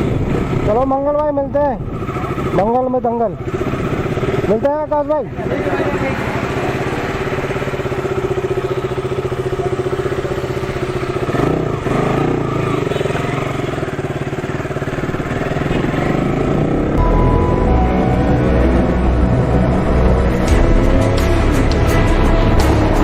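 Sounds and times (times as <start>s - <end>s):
motorcycle engine running: 0.0s - 23.0s
music: 17.0s - 23.0s.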